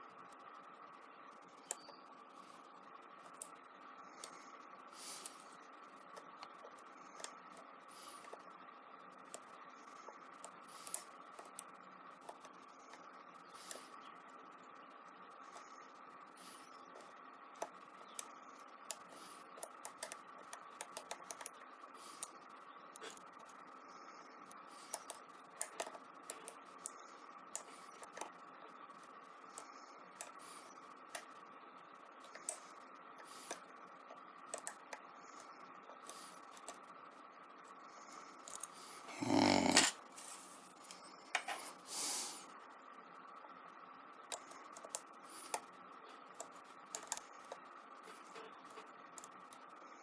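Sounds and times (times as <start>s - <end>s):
faint hum: 0.0s - 50.0s.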